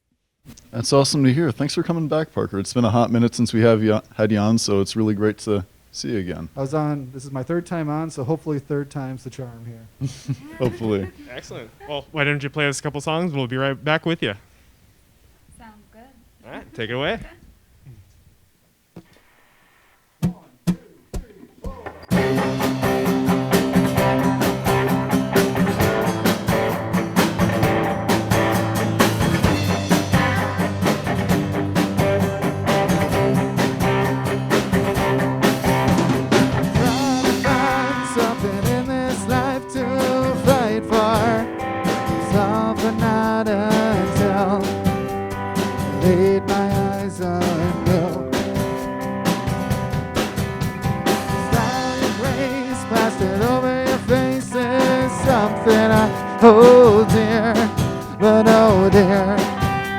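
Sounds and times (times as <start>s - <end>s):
live band playing: 20.6s - 59.9s.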